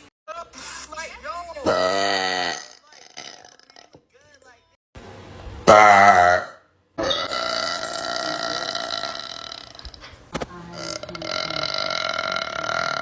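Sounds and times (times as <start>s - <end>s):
person burping: 1.7s - 4.0s, 5.7s - 9.8s, 10.8s - 13.0s.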